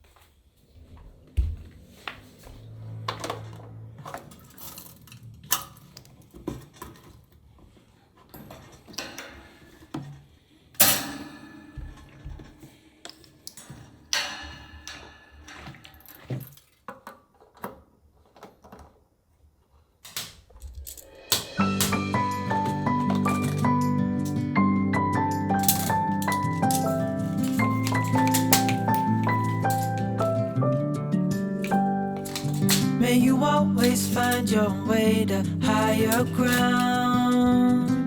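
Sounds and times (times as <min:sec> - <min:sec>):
dishes and utensils clinking: 0:20.8 - 0:24.6, 0:25.4 - 0:30.6, 0:31.4 - 0:37.5.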